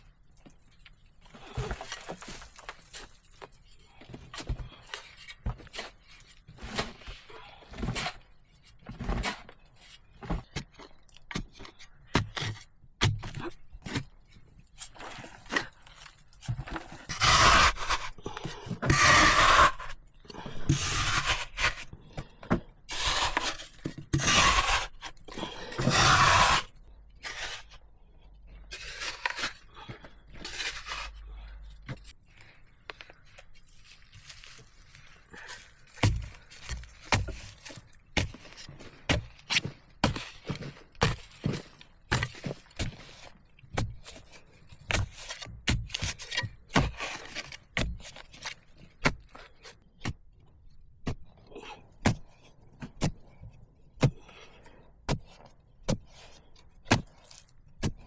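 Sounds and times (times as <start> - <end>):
hand tool scraping: 14.5 - 27.8, 28.6 - 32.2, 33.0 - 49.5.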